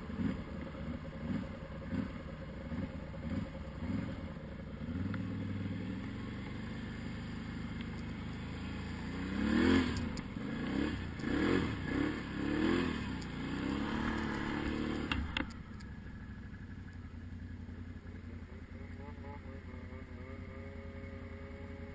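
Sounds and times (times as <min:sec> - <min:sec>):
quad engine revving: 0:00.0 - 0:15.6, 0:18.5 - 0:21.9
sharp clicks: 0:09.9 - 0:10.3, 0:13.1 - 0:13.4, 0:15.0 - 0:16.0.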